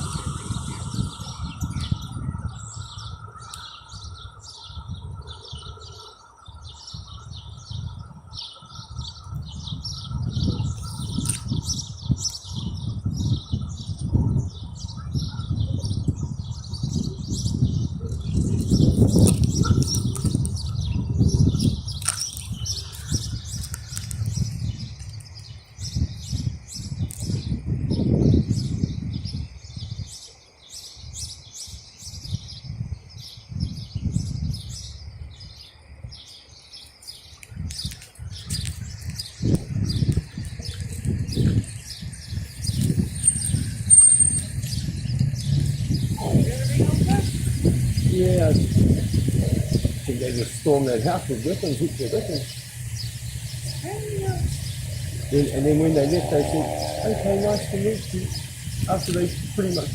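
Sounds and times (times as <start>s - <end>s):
small birds chirping: 0.0s - 59.9s
low uneven rumble: 43.3s - 59.9s.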